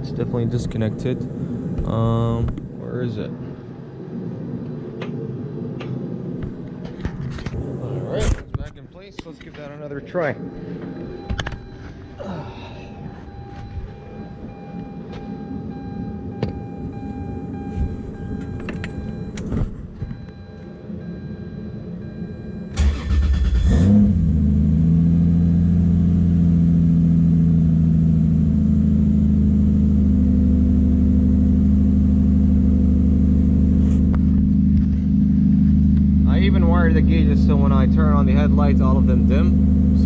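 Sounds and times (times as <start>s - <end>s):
low hum: 0.0s - 40.0s
car engine cranking and idling: 13.0s - 40.0s.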